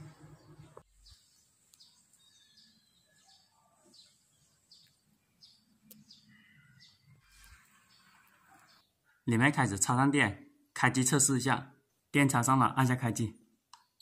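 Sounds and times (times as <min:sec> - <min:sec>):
faint bird chirps: 0:00.0 - 0:09.5.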